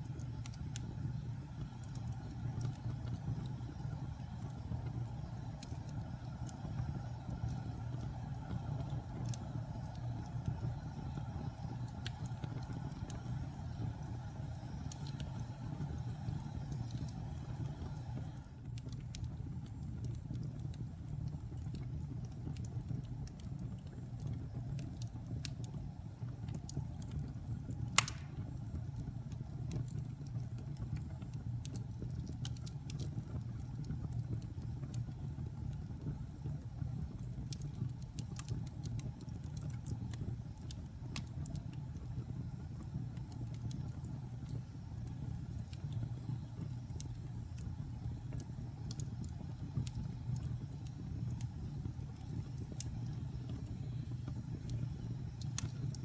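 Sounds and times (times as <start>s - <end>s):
low rumble of burning: 0.0s - 56.0s
wood fire crackling: 0.0s - 56.0s
loud pop: 28.0s - 28.4s.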